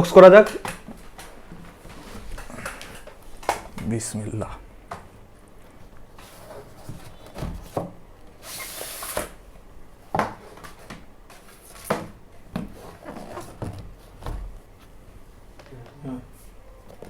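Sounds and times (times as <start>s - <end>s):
packaging scraping rustle: 8.4s - 9.3s.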